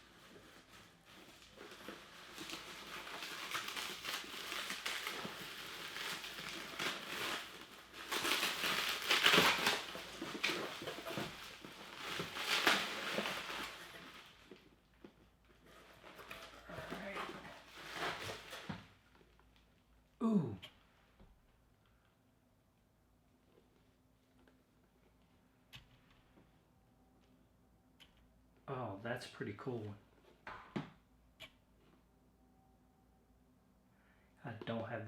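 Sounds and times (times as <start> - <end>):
plastic packaging crinkling: 0.0 - 19.7.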